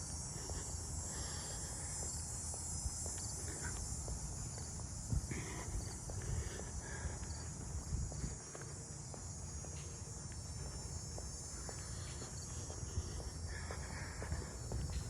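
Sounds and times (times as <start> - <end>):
crickets chirping: 0.0 - 15.0
footsteps on pavement: 0.0 - 15.0
wind rumble on microphone: 4.7 - 8.6.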